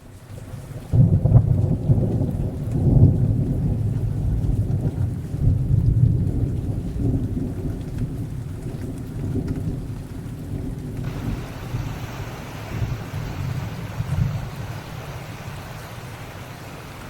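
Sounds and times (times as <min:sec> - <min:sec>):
hiss of spray: 0:11.0 - 0:17.0
waterfall roaring: 0:11.0 - 0:17.0.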